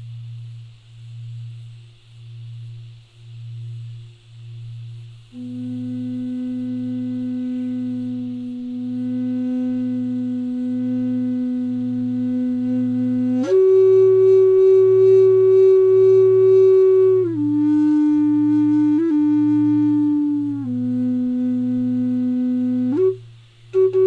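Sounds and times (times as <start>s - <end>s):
faint high insect hiss: 0.0s - 24.0s
low pulsing tone: 3.6s - 23.2s
flute long held notes: 5.3s - 24.0s.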